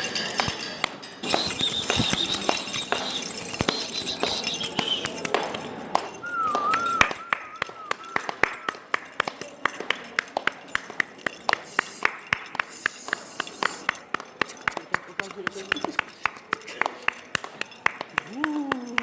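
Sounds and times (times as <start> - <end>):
wavering whistle-like tone: 6.2 - 8.8.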